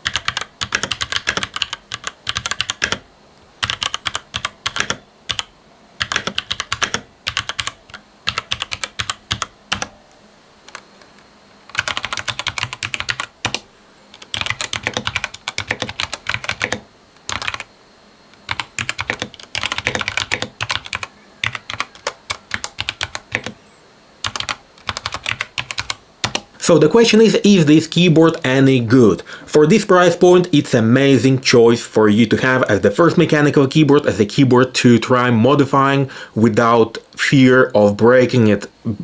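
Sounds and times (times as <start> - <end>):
mechanical keyboard typing: 0.0 - 3.0, 3.6 - 9.9, 11.7 - 17.7, 18.4 - 23.6, 24.2 - 26.5.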